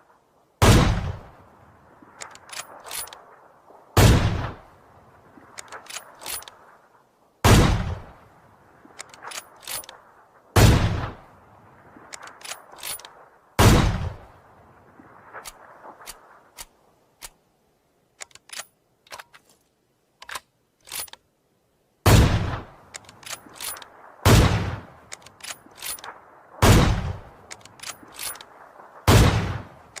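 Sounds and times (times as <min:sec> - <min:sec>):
heavy rifle shots with echo: 0:00.6 - 0:01.3, 0:04.0 - 0:04.7, 0:07.4 - 0:08.1, 0:10.6 - 0:11.2, 0:13.6 - 0:14.3, 0:22.1 - 0:28.4, 0:29.0 - 0:29.8
rifle action clicks: 0:02.2 - 0:03.3, 0:05.5 - 0:06.6, 0:08.9 - 0:10.0, 0:12.1 - 0:13.2, 0:15.4 - 0:17.4, 0:18.2 - 0:19.6, 0:20.2 - 0:21.3, 0:22.4 - 0:30.0.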